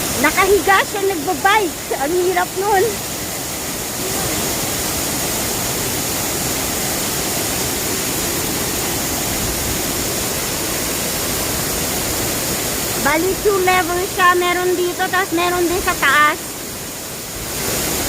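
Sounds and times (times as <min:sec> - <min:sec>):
waterfall rushing: 0:00.0 - 0:18.0.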